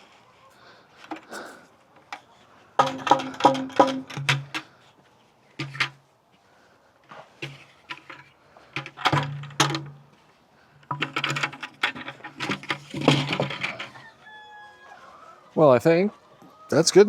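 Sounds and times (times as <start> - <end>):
hard objects clattering: 2.8 - 4.7, 7.3 - 10.1, 10.8 - 14.0.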